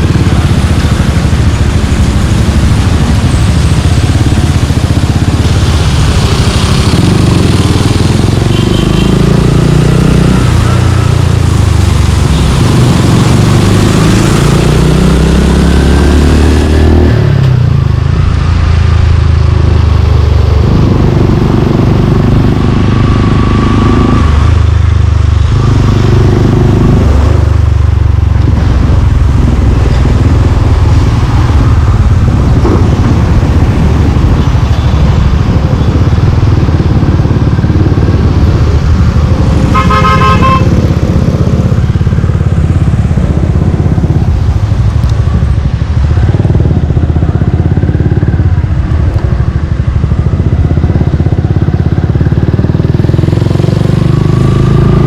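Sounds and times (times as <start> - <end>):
motorcycle engine riding: 0.0 - 55.0
vehicle horn: 8.5 - 9.2, 39.6 - 40.8.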